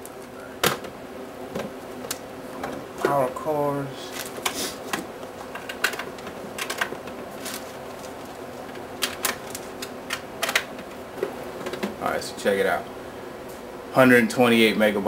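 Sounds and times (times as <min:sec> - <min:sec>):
clicks and knocks on device casing: 0:04.9 - 0:07.2.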